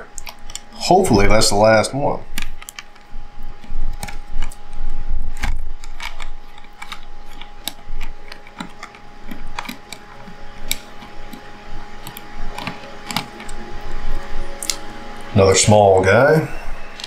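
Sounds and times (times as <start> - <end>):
screwdriver clicks and taps: 12.0 - 13.6.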